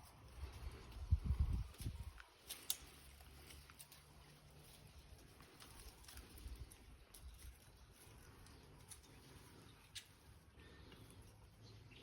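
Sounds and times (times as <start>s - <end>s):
wind rumble on microphone: 0.4s - 2.2s.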